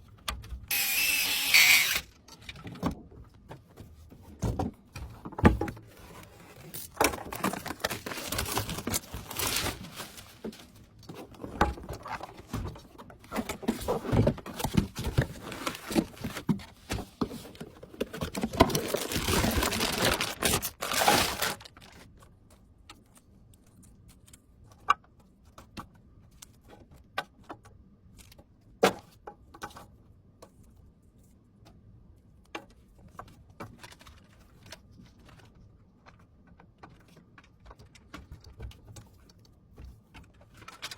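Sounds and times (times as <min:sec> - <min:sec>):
packaging rustling and crinkling: 0:05.8 - 0:22.3, 0:40.2 - 0:40.9.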